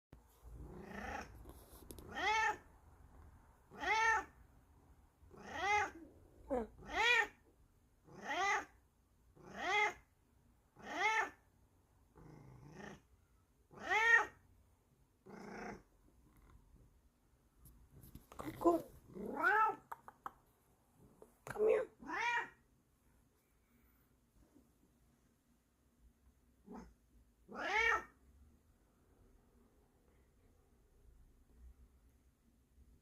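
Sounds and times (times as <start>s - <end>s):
cat meowing: 2.1s - 2.6s, 3.7s - 4.4s, 5.3s - 6.1s, 6.8s - 7.4s, 8.1s - 8.7s, 9.5s - 10.0s, 10.8s - 11.4s, 13.7s - 14.4s, 19.2s - 19.9s, 22.0s - 22.6s, 27.5s - 28.2s.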